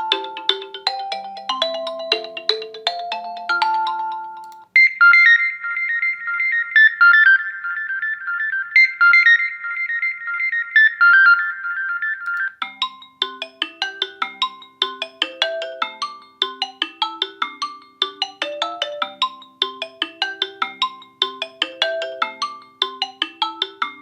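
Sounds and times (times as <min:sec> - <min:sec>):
melodic ringtone: 0:00.0 - 0:06.3, 0:12.5 - 0:24.0
high-pitched trilling ringtone: 0:00.0 - 0:07.5, 0:12.6 - 0:24.0
lower ringtone melody: 0:00.0 - 0:09.7, 0:12.5 - 0:24.0.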